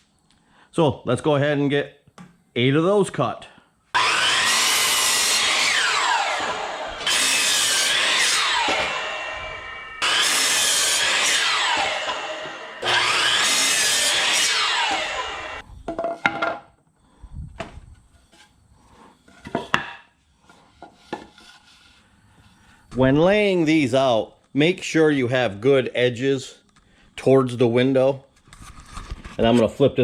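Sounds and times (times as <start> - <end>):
miter saw cutting: 4.0 - 15.6
wooden knocks and clatter: 15.8 - 16.7.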